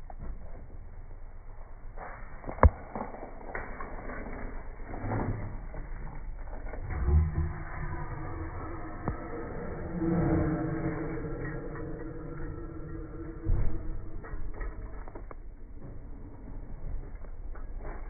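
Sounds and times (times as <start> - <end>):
mechanical creaking and clatter: 3.6 - 18.0
low thuds: 7.4 - 16.4.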